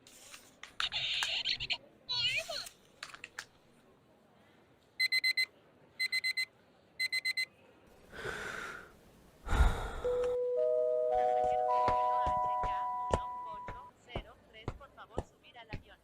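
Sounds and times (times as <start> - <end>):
breathy gasp or yawn: 9.5 - 10.3.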